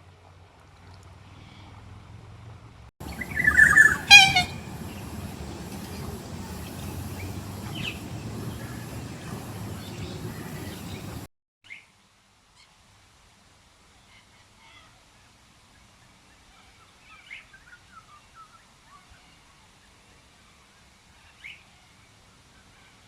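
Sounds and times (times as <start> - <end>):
outdoor background noise: 0.0 - 23.0
faint bird chirps: 3.0 - 11.3
loud bird call: 3.0 - 11.3
short pitched bird call: 3.1 - 11.1.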